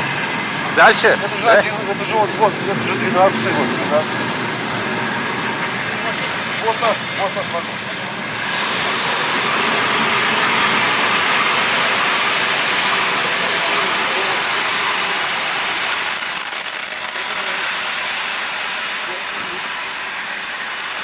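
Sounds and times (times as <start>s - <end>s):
train carriages rumbling past: 0.0s - 21.0s
high squeal of train wheels: 8.4s - 21.0s.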